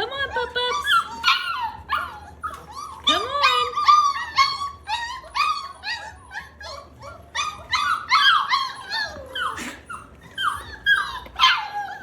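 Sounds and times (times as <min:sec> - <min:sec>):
puppies whining and yipping: 0:00.0 - 0:12.0.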